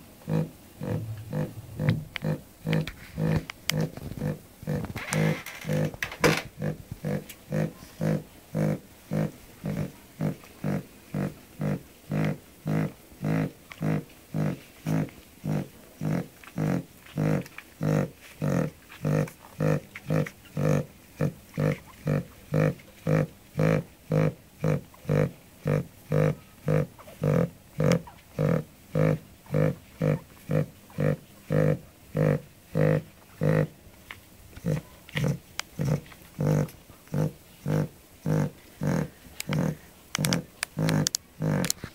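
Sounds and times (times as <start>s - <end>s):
dog snoring: 34.6s - 41.7s.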